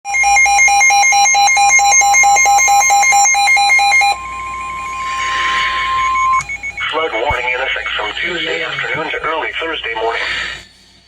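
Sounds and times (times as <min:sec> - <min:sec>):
electronic alarm beeping: 0:00.1 - 0:10.7
steady warning tone: 0:00.1 - 0:11.0
faint radio hiss: 0:06.8 - 0:11.0.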